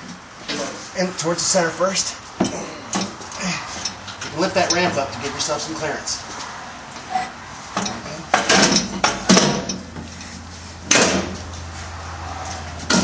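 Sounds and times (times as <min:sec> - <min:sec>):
metal exhaust pipe clunking: 0:07.0 - 0:11.8, 0:12.4 - 0:13.0.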